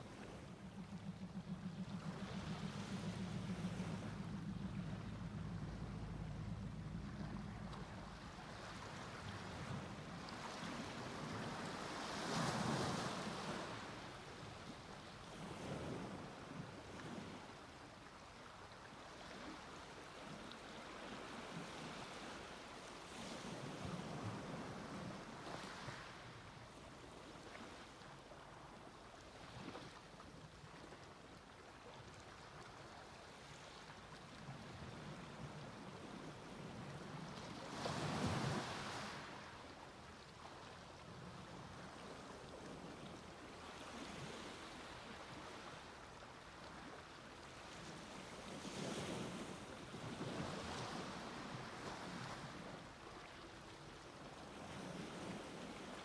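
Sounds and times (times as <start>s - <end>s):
small waves breaking on beach: 19.0s - 56.0s.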